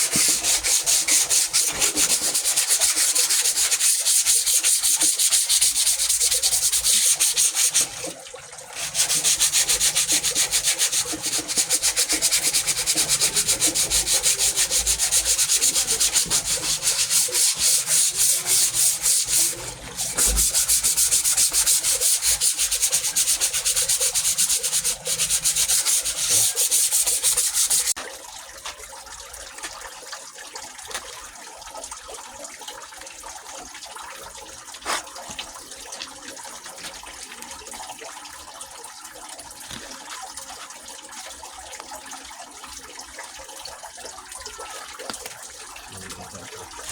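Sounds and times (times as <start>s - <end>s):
sandpaper rubbing: 0.0s - 8.1s, 8.8s - 28.0s.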